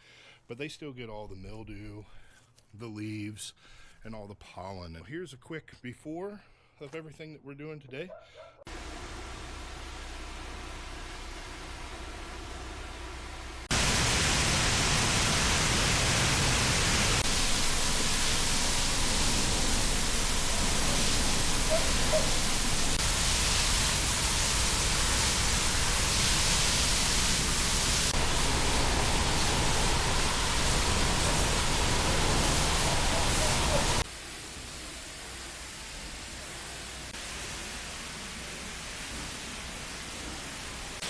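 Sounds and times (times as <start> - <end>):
cleaning equipment rushing noise: 8.7 - 41.0.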